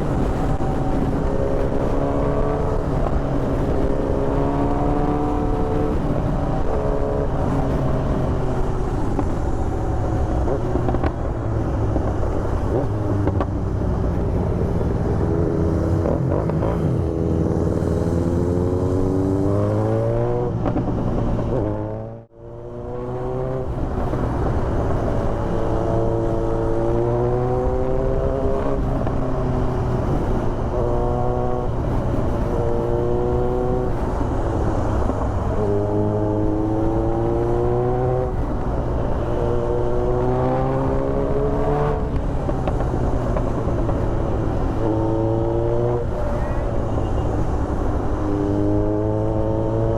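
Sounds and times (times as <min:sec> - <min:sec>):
motorcycle engine accelerating: 0:00.0 - 0:49.9.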